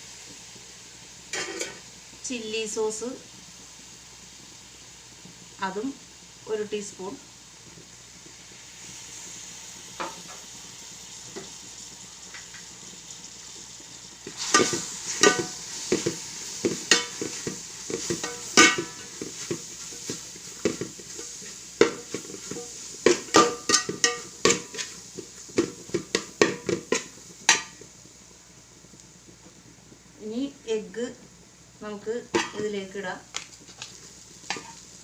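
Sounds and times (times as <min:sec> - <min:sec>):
vegetables sizzling in a pan: 0:00.0 - 0:35.0
spatula scraping a pan: 0:01.3 - 0:01.8, 0:14.3 - 0:27.8, 0:33.6 - 0:34.9.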